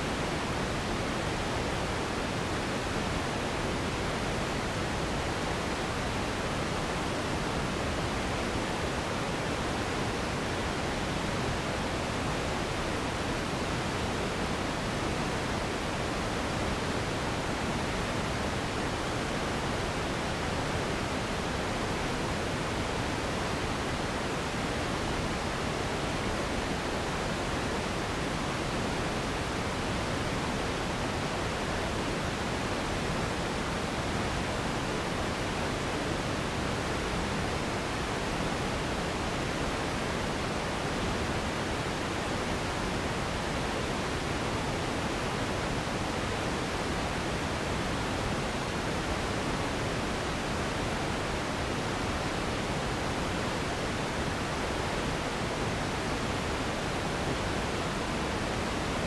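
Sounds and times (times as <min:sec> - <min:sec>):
pink noise hiss: 0:00.0 - 0:59.0.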